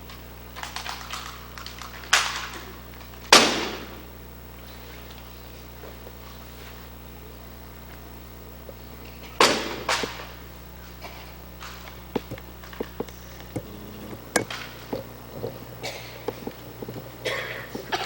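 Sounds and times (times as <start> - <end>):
rifles striking in unison: 3.3 - 4.0, 9.4 - 10.4
rifles clicking and knocking: 11.6 - 18.0.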